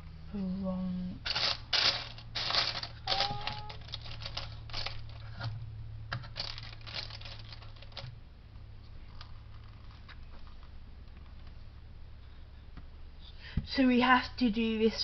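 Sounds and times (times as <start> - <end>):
plastic toy pieces clattering: 1.2 - 8.2.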